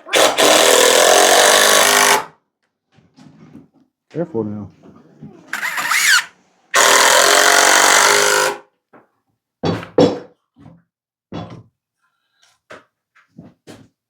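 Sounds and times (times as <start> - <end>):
power tool running: 0.1 - 2.3, 5.5 - 8.6.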